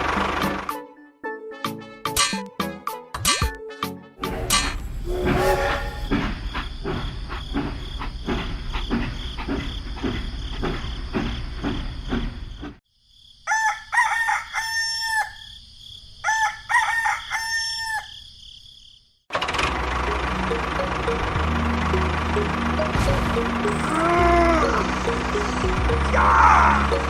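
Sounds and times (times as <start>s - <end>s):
rooster crowing: 13.4s - 15.6s, 16.2s - 18.2s
rhythmic low pulsing: 20.1s - 26.2s.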